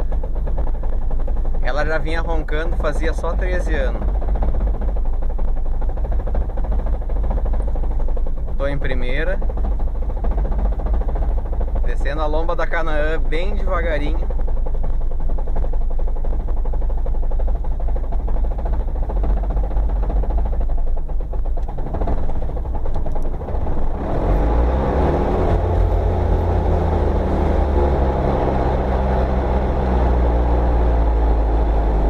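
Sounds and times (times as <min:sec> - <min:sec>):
car engine and drivetrain drone: 0:00.0 - 0:32.0.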